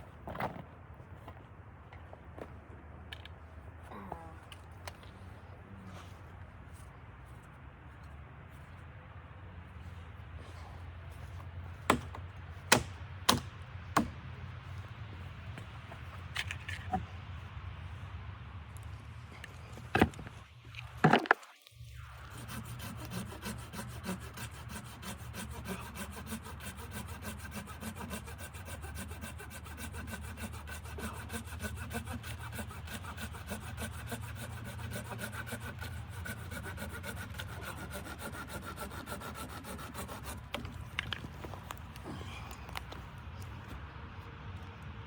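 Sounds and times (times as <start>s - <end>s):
saw cutting through wood: 22.0s - 41.5s.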